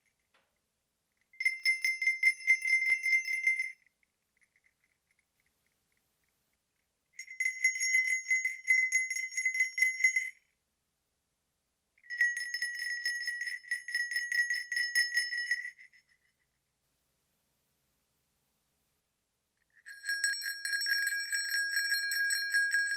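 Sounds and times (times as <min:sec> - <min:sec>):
sleigh bells jingling: 0:01.4 - 0:03.8, 0:07.2 - 0:10.4, 0:12.1 - 0:16.4, 0:19.8 - 0:22.9.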